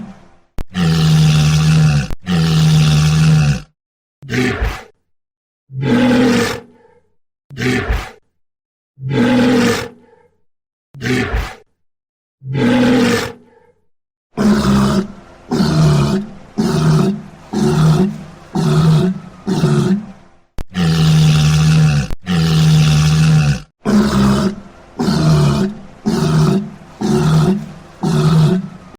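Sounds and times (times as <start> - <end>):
walrus bellowing: 0.0 - 3.7, 5.8 - 6.7, 9.1 - 10.0, 12.5 - 13.4, 14.4 - 28.9.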